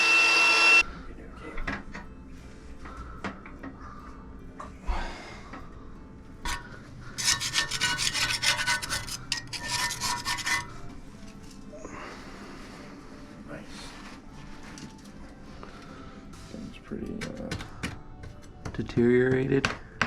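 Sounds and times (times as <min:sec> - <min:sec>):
hand tool scraping hard surface: 0:06.5 - 0:10.9.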